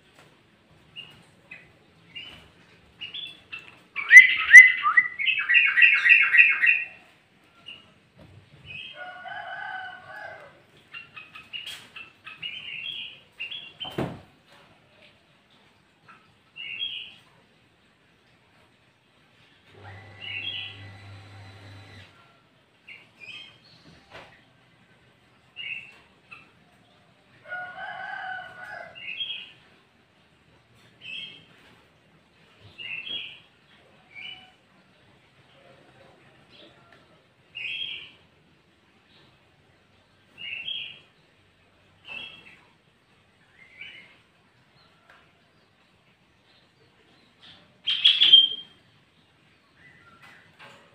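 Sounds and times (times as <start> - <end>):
bird calls and whistled notes: 4.0 - 6.9
rooster crowing: 9.0 - 10.6.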